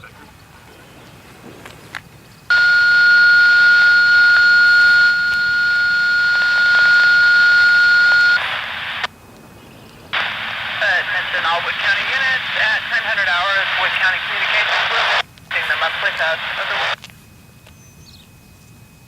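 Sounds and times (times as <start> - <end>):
steady high tone: 2.5 - 8.4
radio static: 2.5 - 9.1, 10.2 - 17.0.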